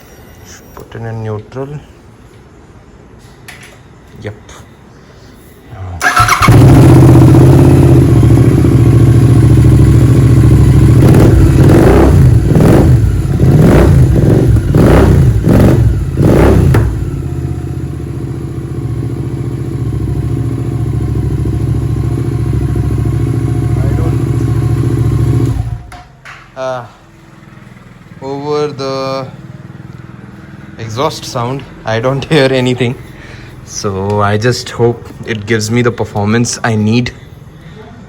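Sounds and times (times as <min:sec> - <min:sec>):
engine revving in blips: 0:06.0 - 0:17.4
motorcycle engine starting and idling: 0:06.0 - 0:26.2.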